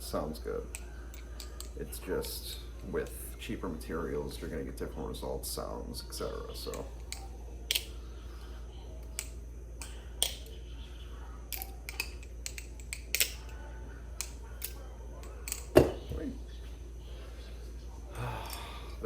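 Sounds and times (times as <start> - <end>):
butterfly knife metal clicks: 6.7 - 7.9.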